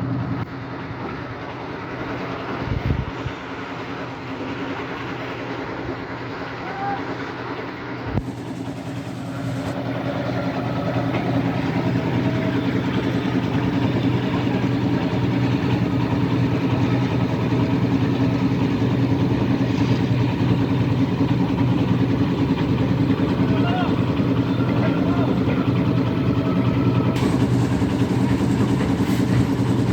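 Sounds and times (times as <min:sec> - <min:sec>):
engine humming: 0:08.1 - 0:29.9.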